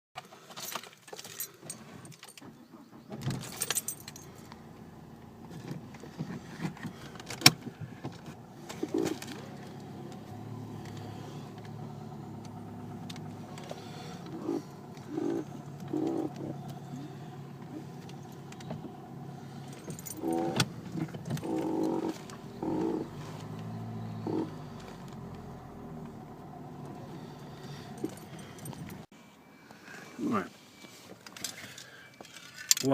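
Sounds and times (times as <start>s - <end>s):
keys jangling: 0.5s - 2.5s, 3.3s - 4.6s, 19.6s - 20.6s, 27.5s - 29.1s
steering wheel rubbing creaks: 5.4s - 26.1s.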